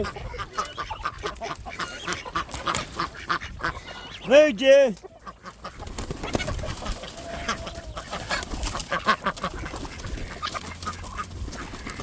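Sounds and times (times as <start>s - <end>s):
chickens and ducks clucking: 0.0s - 12.0s.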